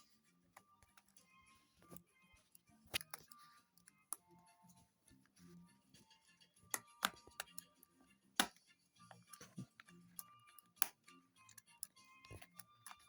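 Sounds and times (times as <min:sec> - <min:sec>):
small parts clicking and tapping: 0:00.6 - 0:04.5, 0:06.7 - 0:13.0.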